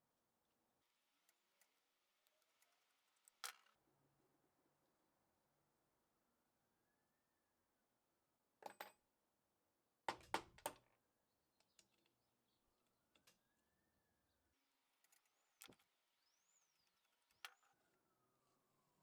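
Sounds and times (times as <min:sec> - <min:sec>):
faint siren: 0:17.5 - 0:19.0.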